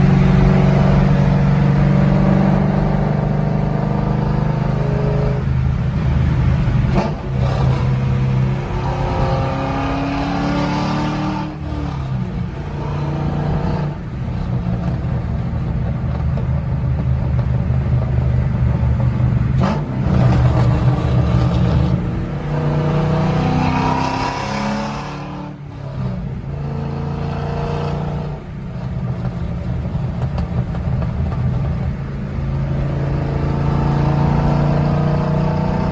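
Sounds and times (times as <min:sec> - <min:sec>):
car exhaust note accelerating: 0:00.0 - 0:14.0.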